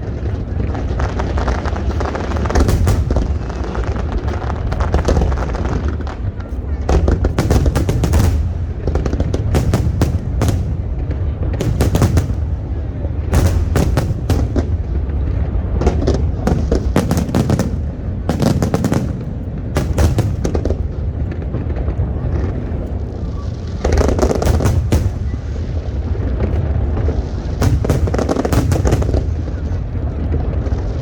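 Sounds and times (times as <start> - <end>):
fireworks bangs and crackles: 0.0 - 31.0
low rumble of booms: 0.0 - 31.0.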